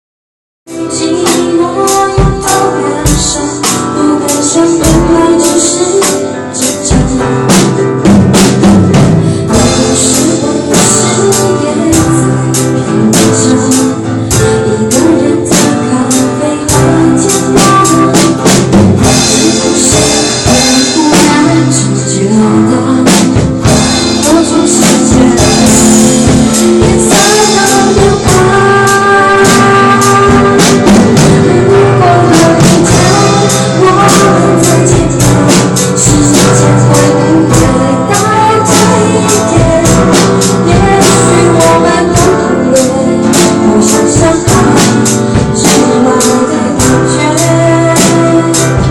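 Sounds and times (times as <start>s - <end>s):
person singing: 0.7s - 8.1s, 9.3s - 48.9s
loud music with drum beat: 0.7s - 48.9s.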